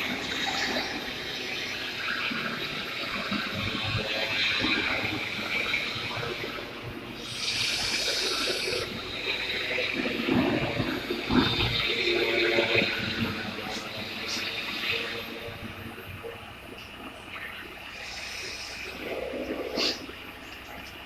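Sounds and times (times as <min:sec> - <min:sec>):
welding hiss: 0:07.2 - 0:12.2, 0:17.9 - 0:20.7.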